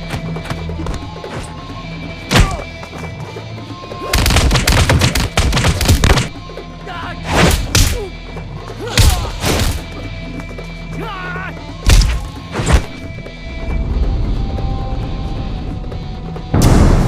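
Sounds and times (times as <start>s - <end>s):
background music: 0.0s - 17.0s
punch and kick impacts: 4.1s - 6.4s, 11.8s - 13.0s.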